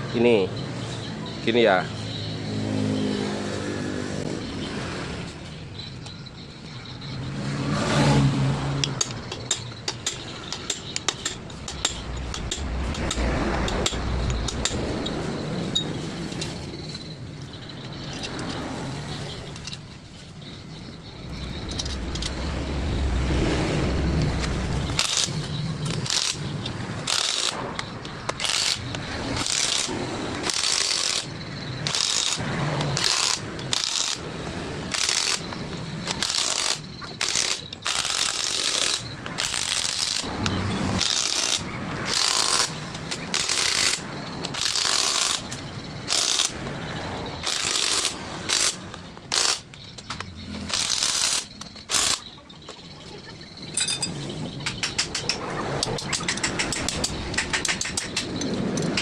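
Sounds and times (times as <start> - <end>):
ratchet wrench strokes: 25.0 - 25.4, 26.0 - 26.4, 27.1 - 27.6, 28.3 - 32.4, 33.0 - 34.2, 34.9 - 35.5, 36.1 - 40.3, 41.0 - 45.5, 46.1 - 46.6, 47.4 - 49.7, 50.7 - 52.2.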